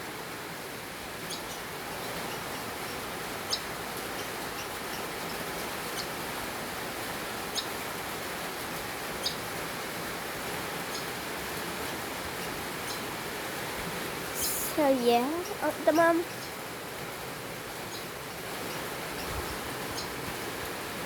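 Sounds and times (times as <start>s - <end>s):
background hiss: 13.1s - 16.8s
sparrow chirping: 14.4s - 16.6s.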